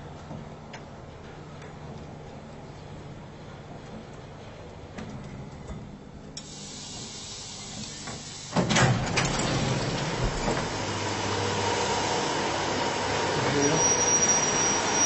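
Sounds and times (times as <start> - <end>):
lift car hum: 6.4 - 15.0
lift doors clattering open: 7.9 - 11.0.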